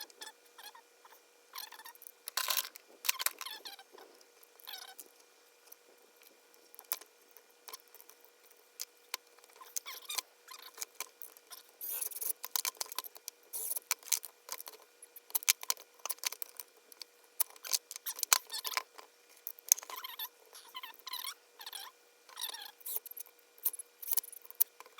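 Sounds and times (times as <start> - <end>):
plastic and metal parts clicking: 12.4 - 19.0.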